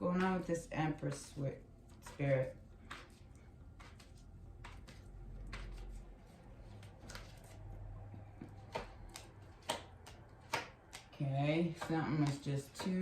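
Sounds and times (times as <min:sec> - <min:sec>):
low steady hum: 0:00.0 - 0:13.0
cards clicking and tapping on table: 0:02.0 - 0:06.0, 0:08.1 - 0:13.0.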